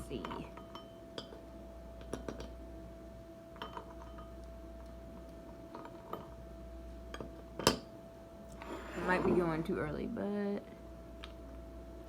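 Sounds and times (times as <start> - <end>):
glassware clinking: 0.2 - 1.4, 3.6 - 4.4.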